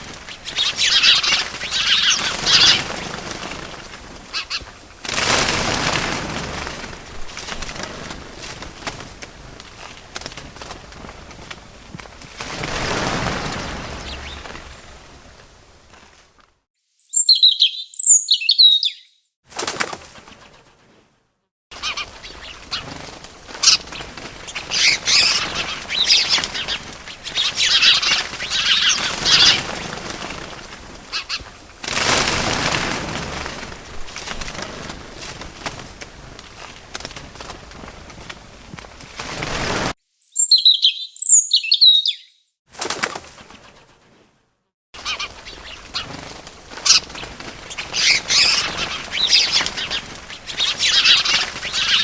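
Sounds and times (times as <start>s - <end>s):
birds twittering: 0.0s - 4.6s, 12.7s - 15.3s, 16.9s - 19.3s, 21.8s - 31.4s, 40.1s - 42.5s, 45.0s - 52.0s
wings flapping: 0.0s - 16.6s, 19.5s - 21.1s, 21.7s - 40.0s, 42.7s - 44.4s, 45.0s - 52.0s
short high bird chirps: 16.8s - 19.3s, 40.1s - 42.5s.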